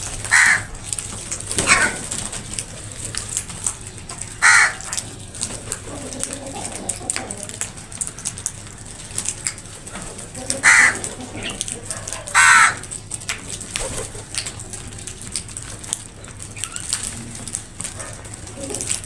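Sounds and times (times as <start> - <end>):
small ticks and clicks: 0.0 - 19.0
crow cawing: 0.2 - 0.8, 1.6 - 2.0, 4.4 - 5.0, 10.5 - 13.0.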